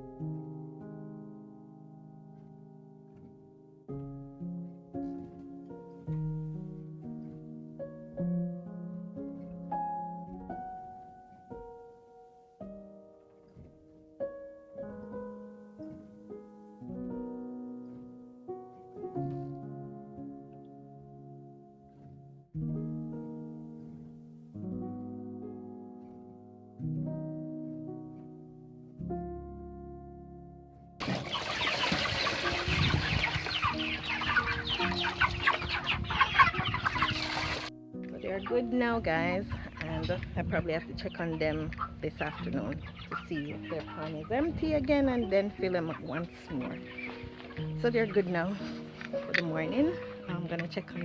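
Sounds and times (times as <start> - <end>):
faint background music: 0.0 - 51.0
gentle piano melody: 0.0 - 51.0
chickens chirping and clucking: 31.0 - 51.0.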